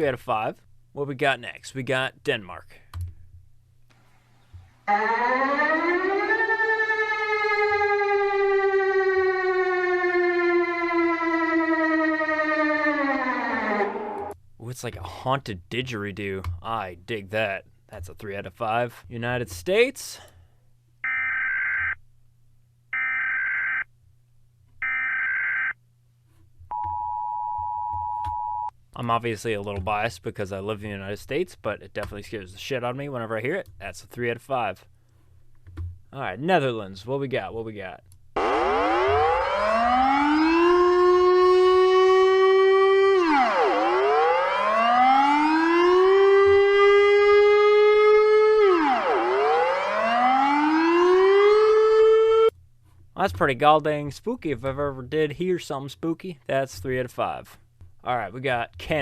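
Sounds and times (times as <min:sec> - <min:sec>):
warning siren wailing: 0:04.9 - 0:14.4, 0:21.0 - 0:22.0, 0:23.0 - 0:23.9, 0:24.8 - 0:25.8, 0:38.4 - 0:52.5.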